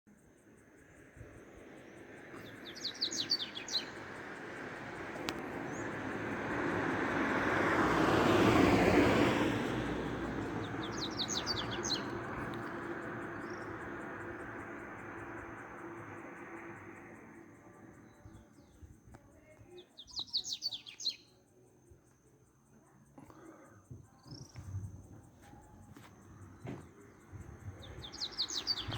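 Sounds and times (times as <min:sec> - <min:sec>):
vehicle passing: 0:01.0 - 0:18.4.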